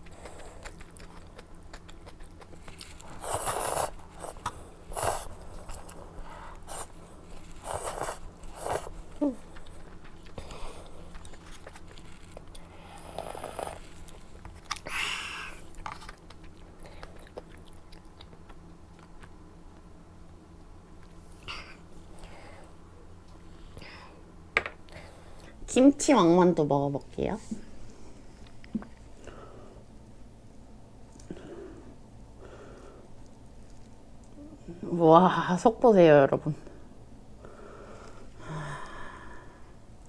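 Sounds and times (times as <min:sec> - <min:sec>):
person biting and chewing food: 0:00.0 - 0:19.4.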